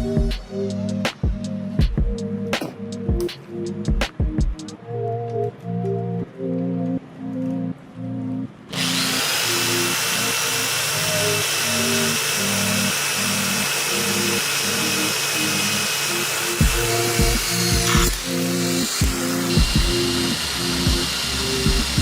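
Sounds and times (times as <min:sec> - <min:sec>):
power tool whining: 0:08.7 - 0:22.0.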